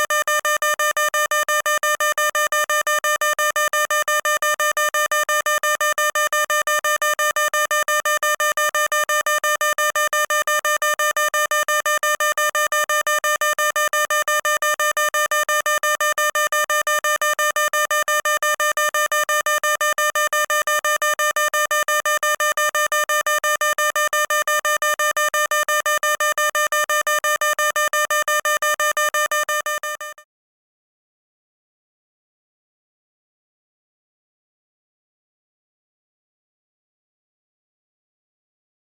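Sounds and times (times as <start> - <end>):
fire alarm pulsing tone: 21.4 - 30.2.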